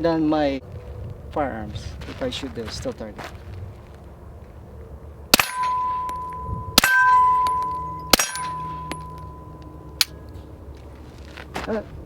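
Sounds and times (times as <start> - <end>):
suppressed pistol shots: 5.3 - 5.8
steel target ringing: 5.3 - 10.3.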